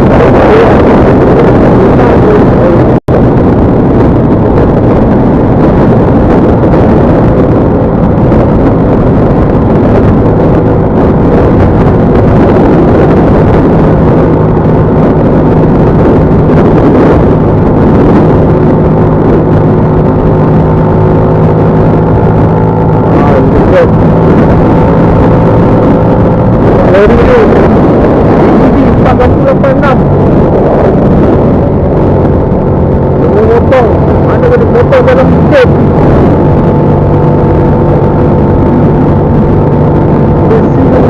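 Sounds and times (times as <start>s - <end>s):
engine hum: 0.0s - 41.0s
vehicle travelling on road: 0.0s - 41.0s
wind buffeting microphone: 0.0s - 41.0s.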